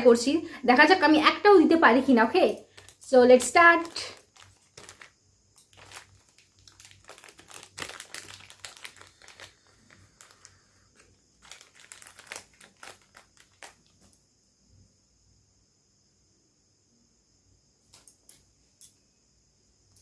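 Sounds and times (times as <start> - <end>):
crinkling handling noise: 2.3 - 14.2.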